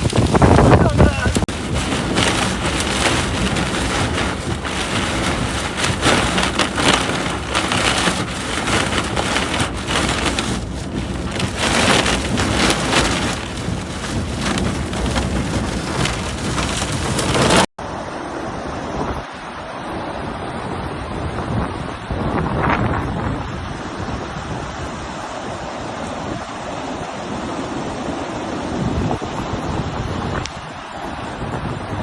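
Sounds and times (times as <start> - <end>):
heavy rain pouring: 0.0 - 17.7.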